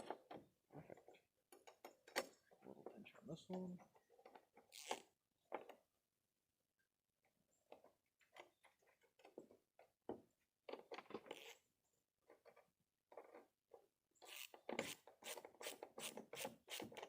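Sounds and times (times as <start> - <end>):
wrench clicking and scraping: 14.2 - 17.0.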